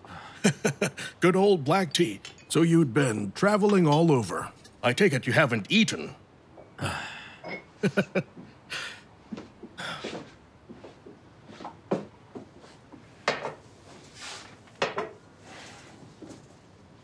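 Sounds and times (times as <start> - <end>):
teacups and dishes clinking: 7.4 - 8.0.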